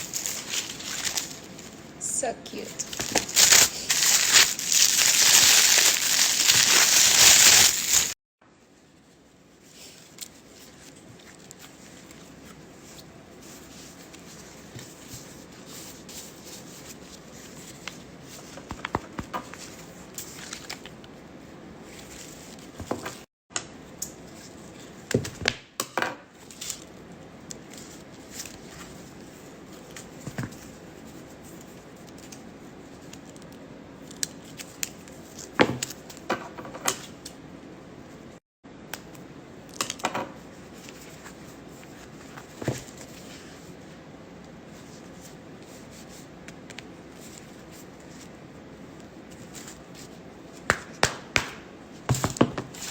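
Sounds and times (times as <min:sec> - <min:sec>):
packaging rustling: 0:00.0 - 0:01.8, 0:02.7 - 0:08.2.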